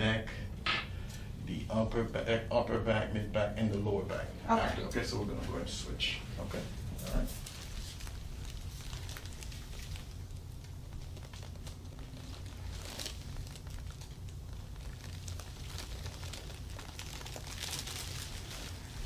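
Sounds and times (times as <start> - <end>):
steady low hum: 0.0 - 19.0
people rustling and brushing: 4.6 - 13.2, 17.3 - 19.0.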